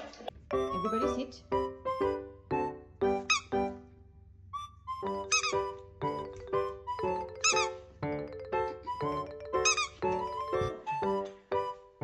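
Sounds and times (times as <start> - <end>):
bouncy background music: 0.3 - 4.0, 4.6 - 12.0
high squeaky chirps: 0.5 - 3.9, 4.6 - 11.1.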